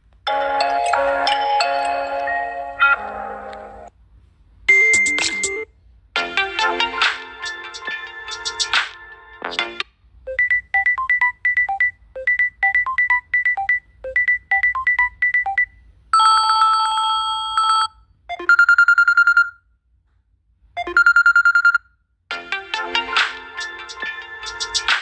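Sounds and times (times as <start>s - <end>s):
phone ringtones and notification tones: 0.3s - 3.9s, 4.7s - 19.5s.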